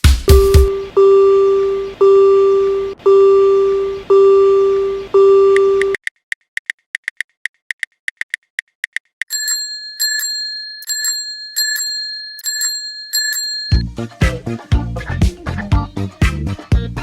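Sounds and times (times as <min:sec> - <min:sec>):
railroad crossing bell ringing: 0:09.3 - 0:13.9.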